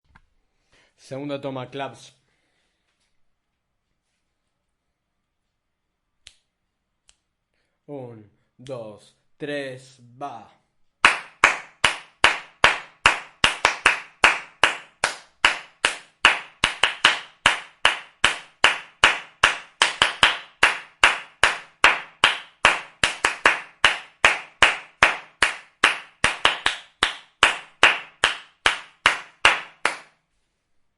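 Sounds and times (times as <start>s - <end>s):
hands clapping: 11.0s - 30.2s.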